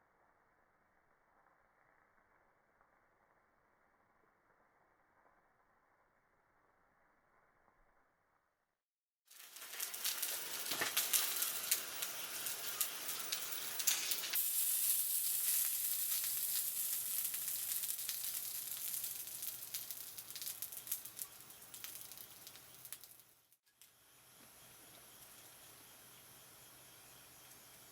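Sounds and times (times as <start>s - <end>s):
food sizzling in hot oil: 9.3s - 27.9s.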